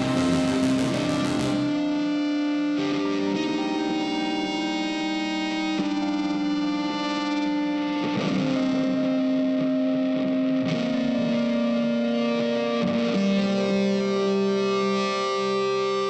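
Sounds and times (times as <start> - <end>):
effects-laden guitar chords: 0.0 - 16.0.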